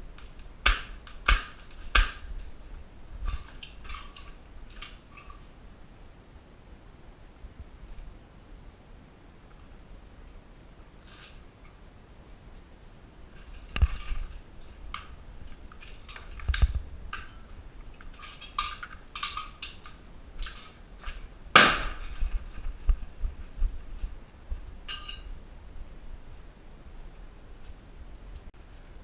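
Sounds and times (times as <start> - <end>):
loud cracks: 0.2 - 2.5, 18.0 - 22.4.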